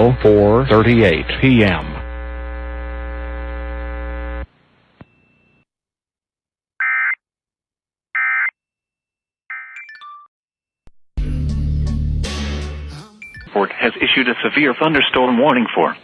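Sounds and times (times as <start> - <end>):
electrical buzz: 0.0 - 4.5.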